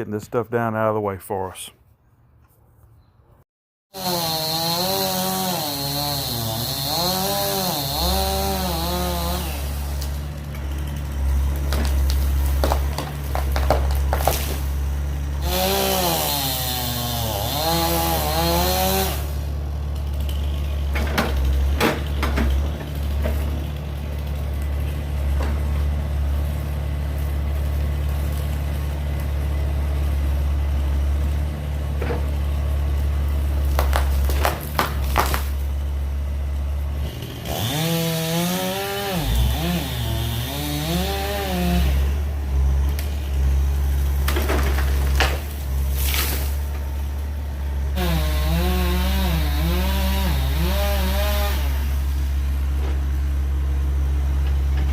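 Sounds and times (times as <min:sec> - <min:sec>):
heavy machinery diesel engine: 0:06.6 - 0:54.9
wood cracking: 0:09.8 - 0:15.0, 0:33.5 - 0:35.8, 0:43.8 - 0:47.4.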